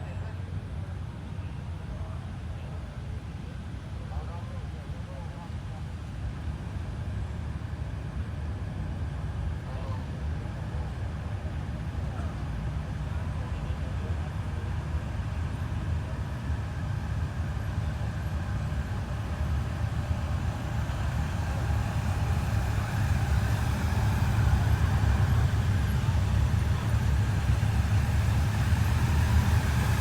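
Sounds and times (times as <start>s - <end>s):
motorcycle engines rumbling: 18.6s - 30.0s.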